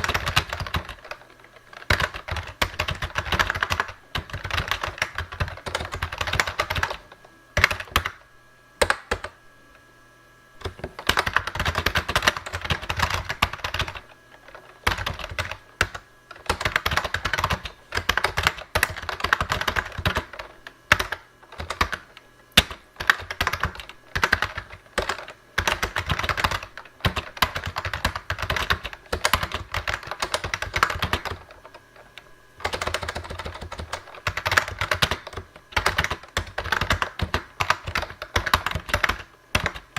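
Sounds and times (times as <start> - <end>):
fast keyboard typing: 0.0 - 8.2, 8.8 - 9.4, 10.6 - 39.9.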